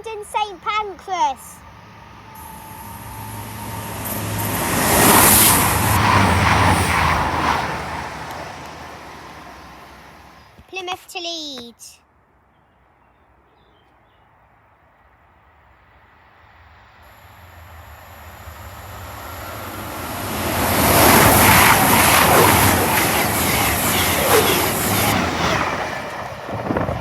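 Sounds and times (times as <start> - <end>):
train passing at speed: 0.0 - 10.6, 14.3 - 27.0
high hiss from rails: 0.1 - 7.3, 16.0 - 26.1.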